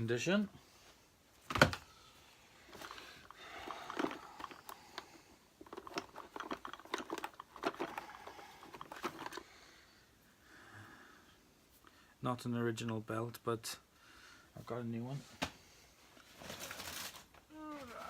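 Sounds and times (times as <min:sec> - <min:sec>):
clicks scrapes and rustling: 0:02.7 - 0:09.4.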